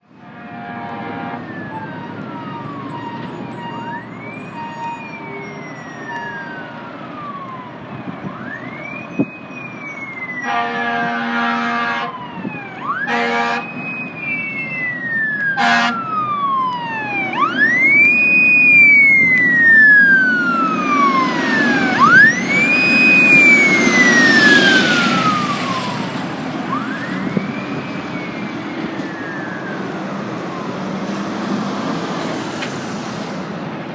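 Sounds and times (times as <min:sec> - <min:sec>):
fire truck siren wailing: 0:00.0 - 0:33.9
truck engine rumble: 0:00.1 - 0:33.9
short horn blasts: 0:00.2 - 0:01.5, 0:10.4 - 0:12.2, 0:13.1 - 0:13.7, 0:15.6 - 0:16.0.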